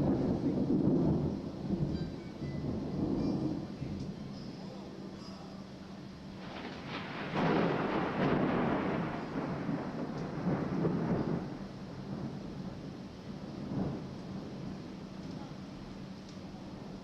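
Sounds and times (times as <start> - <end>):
thunder rolling: 0.0 - 4.3, 6.3 - 15.2.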